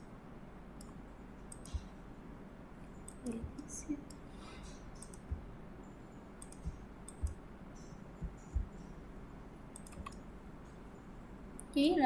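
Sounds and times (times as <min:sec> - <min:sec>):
faint background hiss: 0:00.0 - 0:12.0
computer mouse clicks: 0:00.8 - 0:02.0, 0:03.0 - 0:09.0, 0:09.7 - 0:10.8.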